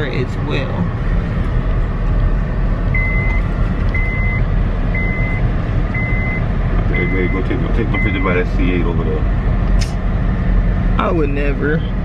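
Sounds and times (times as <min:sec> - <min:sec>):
low rumble of car in motion: 0:00.0 - 0:12.0
high electronic warning beep: 0:02.9 - 0:08.3.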